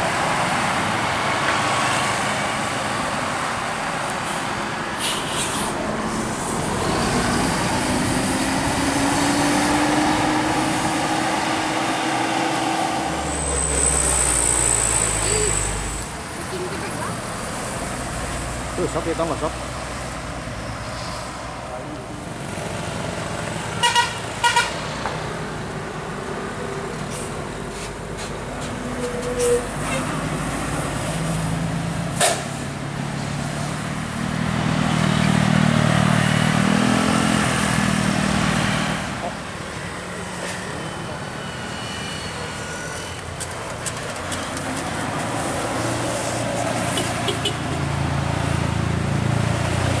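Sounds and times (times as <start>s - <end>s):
traffic and engine noise: 0.0s - 50.0s
vehicle engine drone approaching: 5.7s - 23.7s
bus horn tooting: 23.8s - 24.9s, 29.4s - 30.2s, 46.9s - 47.9s.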